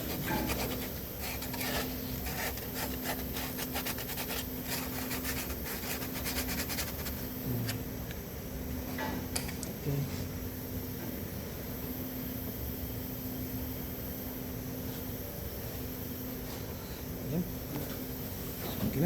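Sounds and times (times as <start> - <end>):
sandpaper scraping: 0.0 - 7.2.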